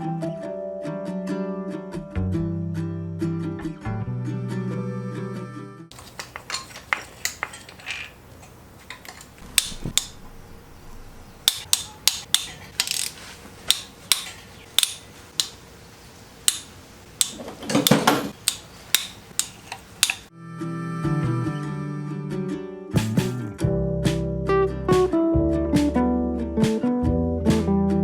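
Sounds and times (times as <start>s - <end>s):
metal tools clinking: 5.9s - 9.8s, 11.4s - 15.5s, 16.5s - 20.3s.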